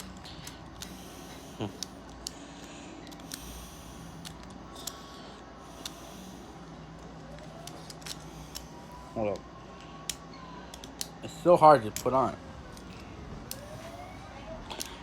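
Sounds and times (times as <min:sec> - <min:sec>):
plastic parts clicking: 0:00.0 - 0:01.0, 0:01.7 - 0:06.0, 0:07.3 - 0:08.7, 0:09.3 - 0:11.2
steady low hum: 0:00.0 - 0:15.0.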